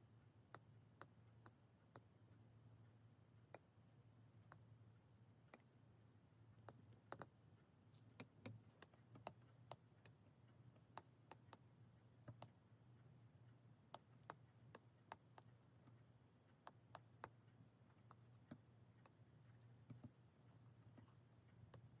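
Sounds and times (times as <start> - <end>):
low steady hum: 0.0 - 22.0
small clicks and taps: 6.6 - 22.0.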